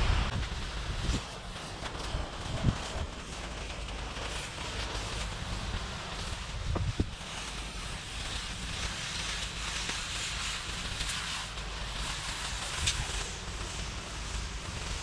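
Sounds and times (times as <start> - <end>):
low rumble: 0.0 - 1.2.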